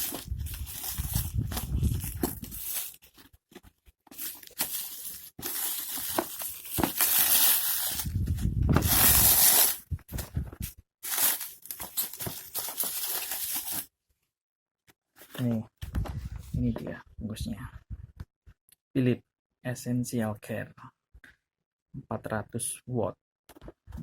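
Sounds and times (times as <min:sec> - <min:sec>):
packaging ripping and rustling: 0:00.0 - 0:13.9.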